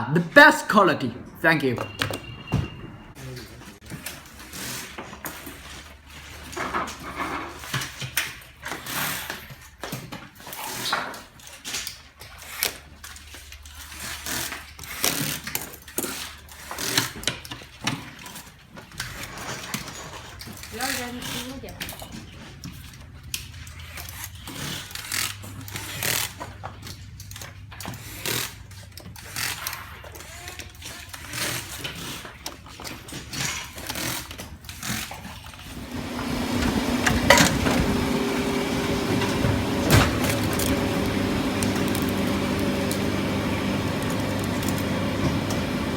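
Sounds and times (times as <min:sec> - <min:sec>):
mechanical hum with held tones: 0:35.6 - 0:45.9
clicks and knocks: 0:35.8 - 0:43.1.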